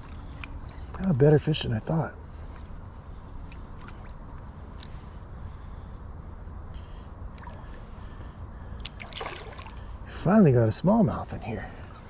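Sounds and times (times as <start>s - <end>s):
insects droning: 0.0s - 12.0s
faint ticks: 3.4s - 5.0s.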